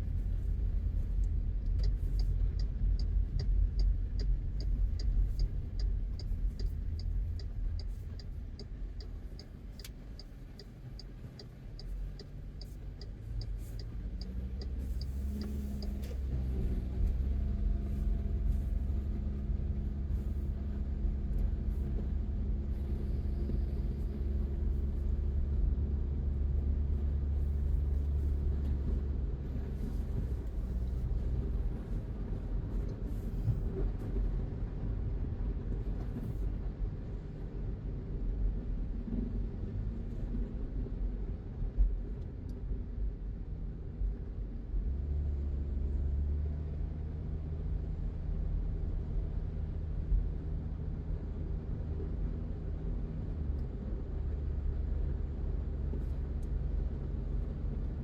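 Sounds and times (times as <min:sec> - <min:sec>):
car engine and tyres rumbling: 0:00.0 - 0:58.0
light regular ticking: 0:00.2 - 0:16.3.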